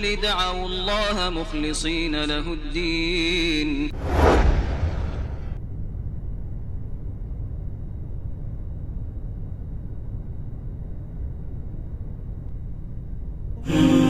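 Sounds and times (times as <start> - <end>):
low rumbling noise: 0.2 - 14.0
music with hummed melody: 13.6 - 14.0.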